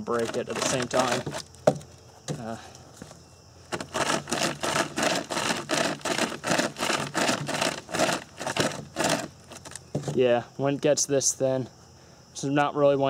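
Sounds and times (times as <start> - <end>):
saw rasping through wood: 0.0 - 1.4, 3.7 - 9.7.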